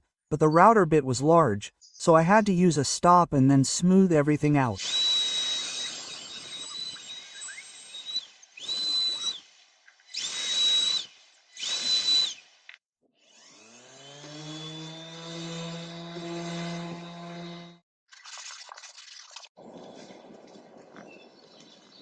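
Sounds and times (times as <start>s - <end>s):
router cutting wood: 4.8s - 9.4s, 13.2s - 17.8s
power tool motor running: 4.8s - 9.5s, 10.1s - 12.5s, 13.2s - 17.8s.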